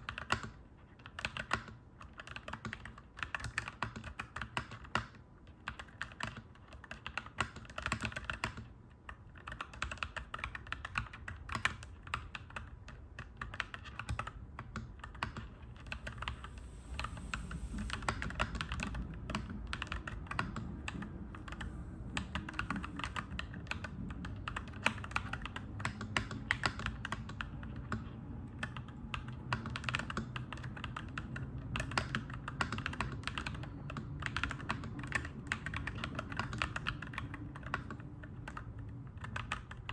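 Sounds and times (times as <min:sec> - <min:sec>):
mechanical keyboard typing: 0:00.0 - 0:16.4, 0:17.0 - 0:39.9
low rumble: 0:15.7 - 0:24.9.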